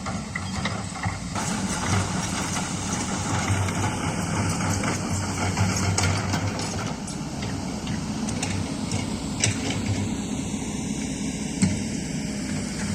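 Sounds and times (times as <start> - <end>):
excavator diesel engine running: 0.0 - 12.9.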